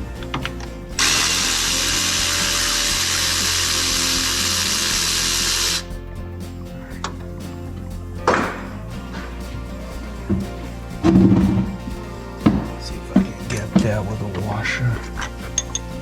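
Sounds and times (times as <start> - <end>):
power tool hissing: 1.0 - 5.9.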